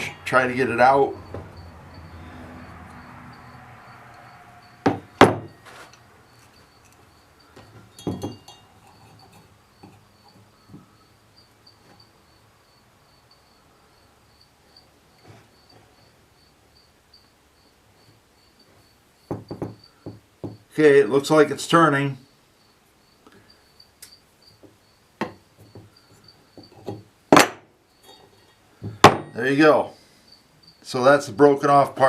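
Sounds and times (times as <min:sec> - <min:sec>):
cricket chirping: 0:00.0 - 0:32.0
hammer knocking on metal: 0:04.8 - 0:05.6, 0:19.3 - 0:20.6.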